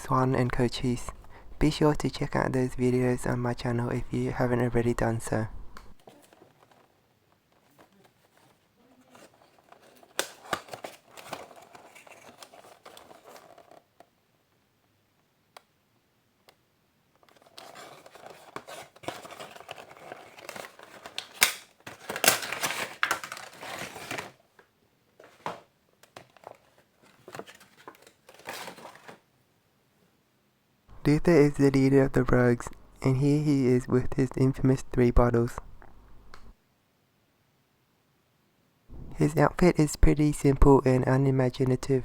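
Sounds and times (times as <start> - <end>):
cardboard and plastic rustling: 6.0 - 14.2, 17.2 - 29.3.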